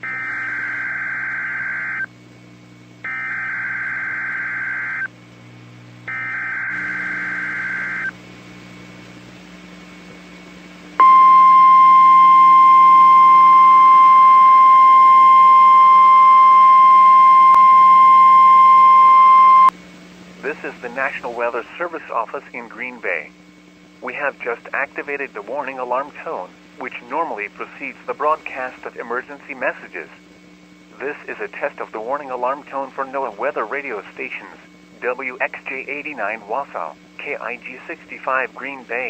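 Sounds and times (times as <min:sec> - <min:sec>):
steady pure alarm tone: 0:00.0 - 0:02.1, 0:03.0 - 0:05.1, 0:06.1 - 0:08.2, 0:11.0 - 0:19.7
radio hiss: 0:20.4 - 0:23.4, 0:24.0 - 0:30.3, 0:30.9 - 0:39.0.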